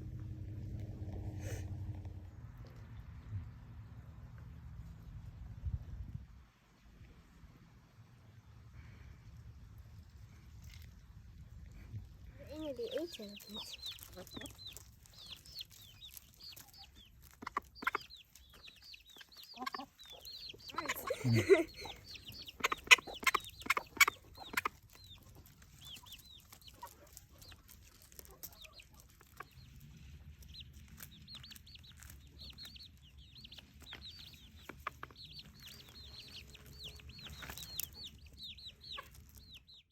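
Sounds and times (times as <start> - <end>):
chickens clucking: 11.8 - 39.8.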